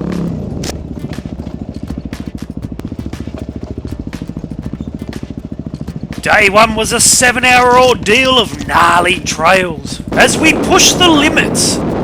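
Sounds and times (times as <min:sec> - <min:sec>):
dirt bike engine idling: 0:00.0 - 0:10.2.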